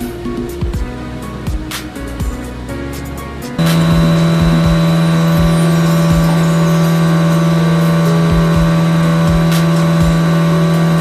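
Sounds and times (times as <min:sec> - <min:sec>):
music with kick-drum beat: 0:00.0 - 0:11.0
blower machine humming: 0:03.6 - 0:11.0.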